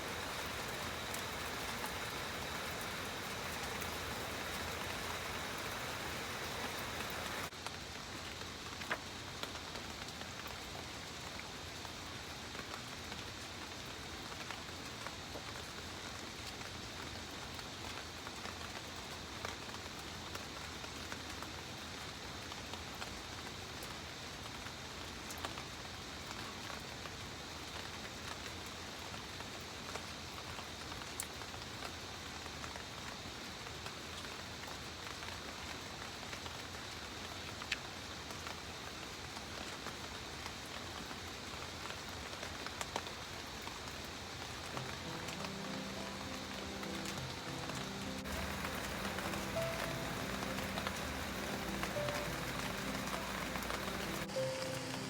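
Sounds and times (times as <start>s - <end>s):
drips ticking: 0.0s - 7.5s, 44.8s - 55.0s
steady rainfall: 0.0s - 55.0s.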